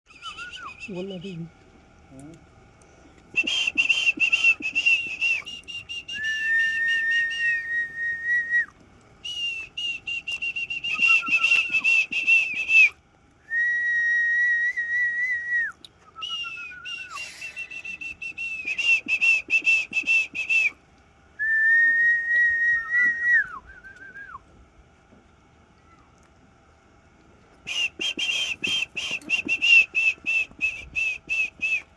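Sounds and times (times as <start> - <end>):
high-pitched whistling: 3.4 - 20.7, 27.7 - 31.9.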